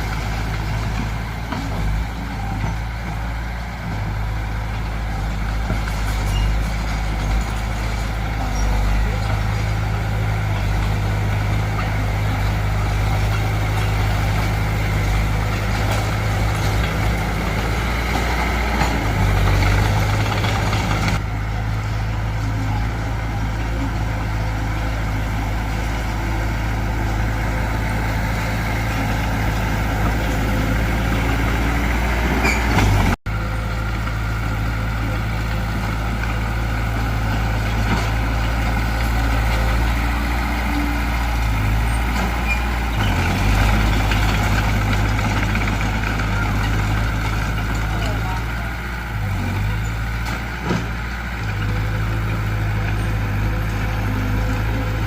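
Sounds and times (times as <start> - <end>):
heavy diesel engine droning: 0.0 - 55.0.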